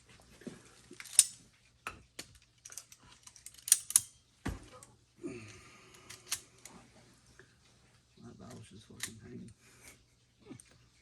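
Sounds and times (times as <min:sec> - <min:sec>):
metallic clicks and clinks: 0:02.2 - 0:04.2.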